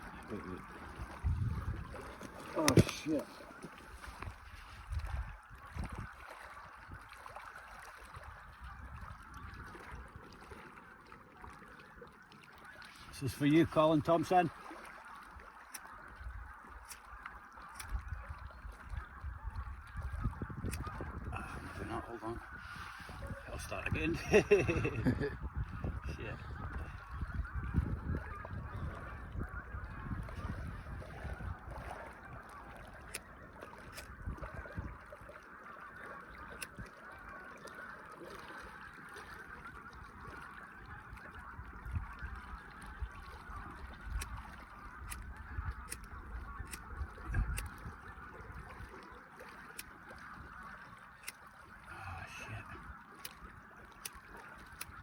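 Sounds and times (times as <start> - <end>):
geese honking: 0.0 - 55.0
faint clicks: 51.2 - 51.7, 53.1 - 55.0.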